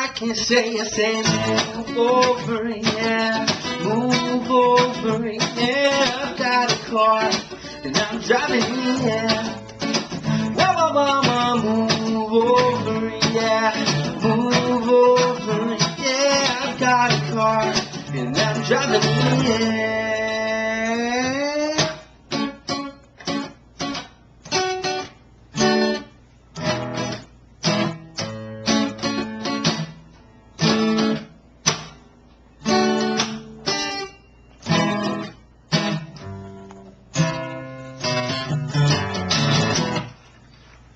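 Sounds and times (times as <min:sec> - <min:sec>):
acoustic guitar strumming: 0:00.0 - 0:40.7.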